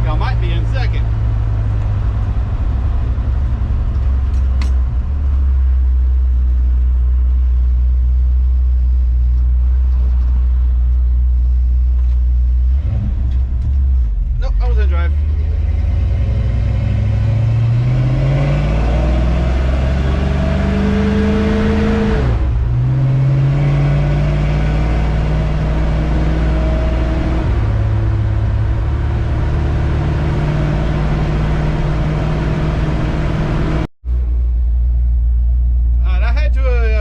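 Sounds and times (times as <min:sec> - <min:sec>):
pickup truck engine accelerating: 0:12.6 - 0:35.8.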